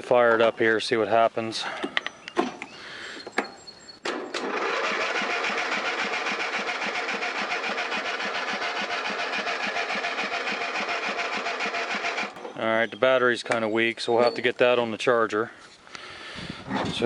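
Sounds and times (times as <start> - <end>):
starter cranking mower engine: 4.1 - 12.4.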